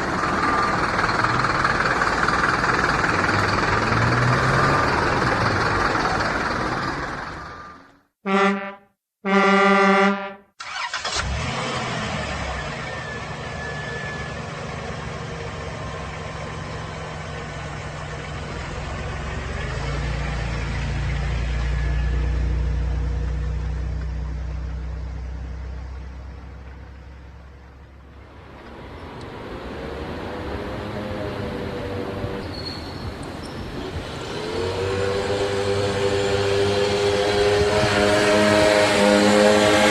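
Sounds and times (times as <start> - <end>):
vehicle horn honking: 8.2 - 10.5
vehicle passing: 26.2 - 32.5, 33.7 - 39.9.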